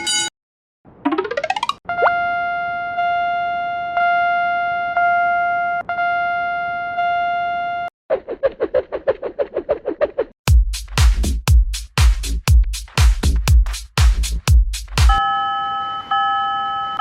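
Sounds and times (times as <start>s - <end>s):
bell-like warning tone: 0.0s - 0.3s, 15.2s - 17.0s.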